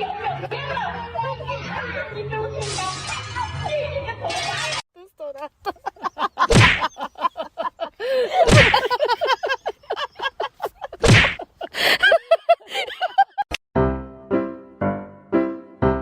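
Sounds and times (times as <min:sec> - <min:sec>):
loud thumps: 0:06.5 - 0:06.9, 0:08.5 - 0:08.9, 0:11.0 - 0:11.4.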